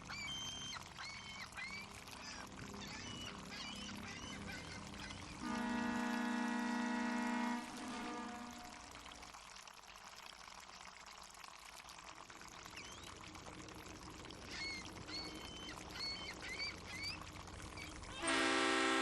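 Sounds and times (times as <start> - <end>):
seagulls calling: 0.0 - 5.7, 14.4 - 18.4
lapping water: 0.0 - 19.0.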